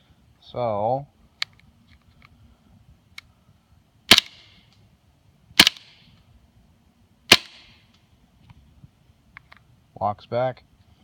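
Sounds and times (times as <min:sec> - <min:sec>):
airsoft pistol shots: 0:04.1 - 0:04.5, 0:05.6 - 0:06.0, 0:07.3 - 0:07.7.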